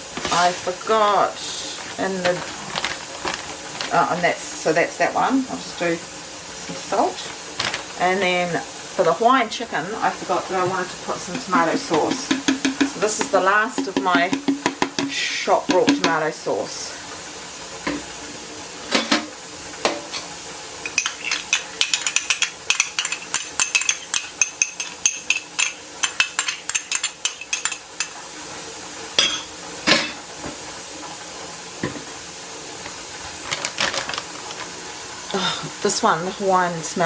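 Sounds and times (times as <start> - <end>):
louder knocks: 12.0 - 16.2
metal utensil clinking on a dish: 20.9 - 28.2, 29.2 - 30.2.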